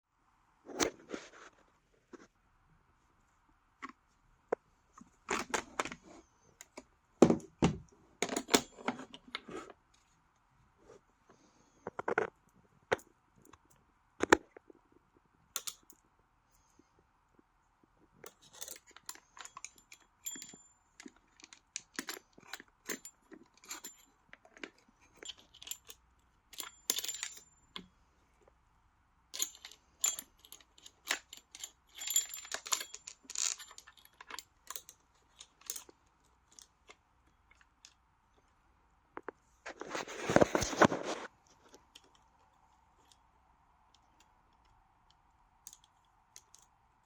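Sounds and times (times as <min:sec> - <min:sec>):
metal chain parts clinking: 0:18.3 - 0:24.1, 0:25.0 - 0:27.8, 0:29.4 - 0:36.7.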